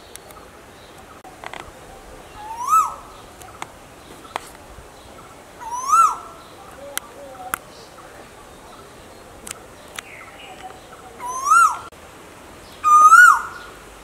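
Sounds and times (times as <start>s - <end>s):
bird whistled call: 2.3s - 3.2s, 5.6s - 6.3s, 11.2s - 11.9s, 12.8s - 13.8s.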